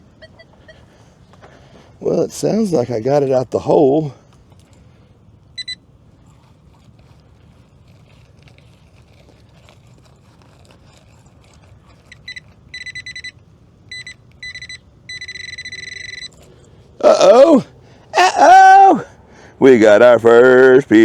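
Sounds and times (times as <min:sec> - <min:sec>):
metal detector pinpointer beeping: 0:00.2 - 0:00.8, 0:05.6 - 0:05.8, 0:12.3 - 0:16.4.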